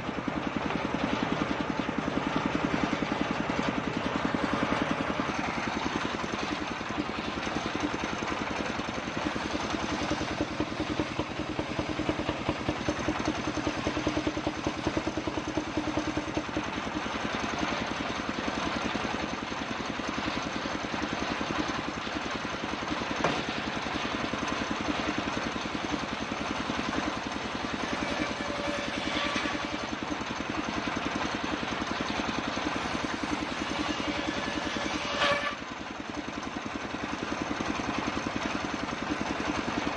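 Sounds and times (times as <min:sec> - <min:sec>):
circular saw engine drone: 0:27.5 - 0:30.0, 0:32.7 - 0:35.6.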